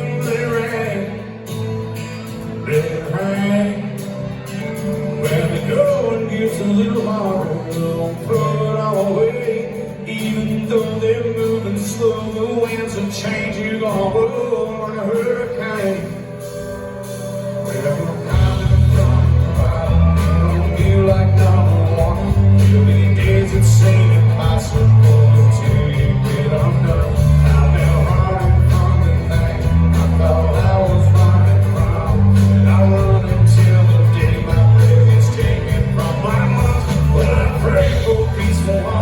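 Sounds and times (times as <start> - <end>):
live country band playing: 0.0 - 39.0
bass and drums: 10.2 - 39.0.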